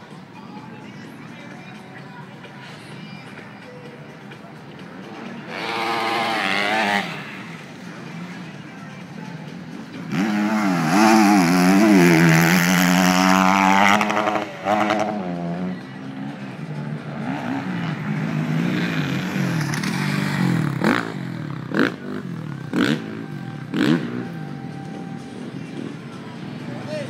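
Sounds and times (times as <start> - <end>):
motorcycle engine revving: 5.1 - 7.6, 10.0 - 24.5.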